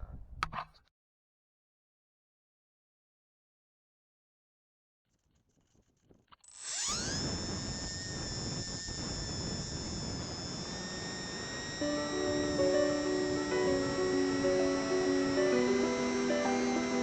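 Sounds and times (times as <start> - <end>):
electric motor high whine: 6.4 - 17.0
propeller rushing noise: 10.8 - 17.0
guitar music: 11.8 - 17.0.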